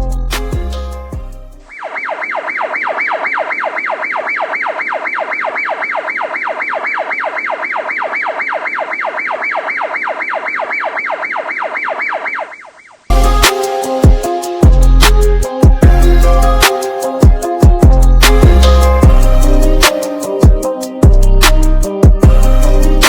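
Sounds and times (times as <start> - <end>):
electronic siren yelping: 1.7 - 14.7.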